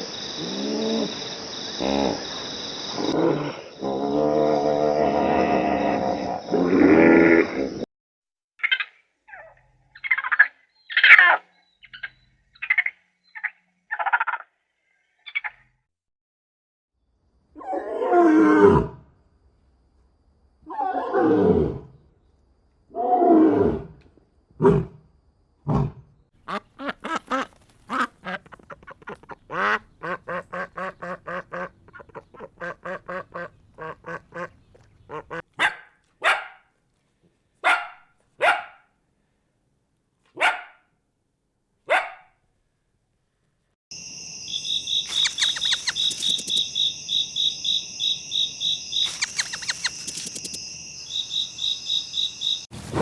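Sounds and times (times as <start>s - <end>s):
animal calls: 44.9s - 52.7s.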